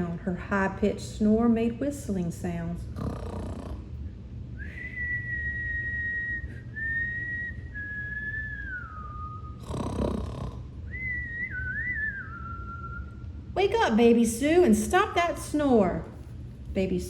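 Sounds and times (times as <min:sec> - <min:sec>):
person whistling high tone: 0:04.6 - 0:09.6, 0:10.9 - 0:13.2.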